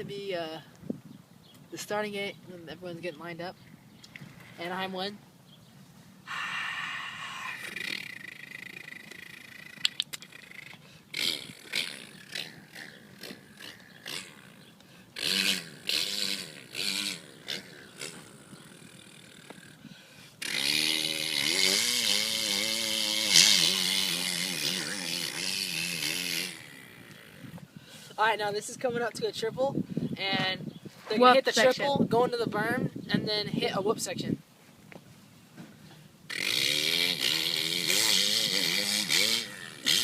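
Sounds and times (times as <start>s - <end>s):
man imitating dirt bikes: 6.3s - 34.3s, 36.3s - 40.0s.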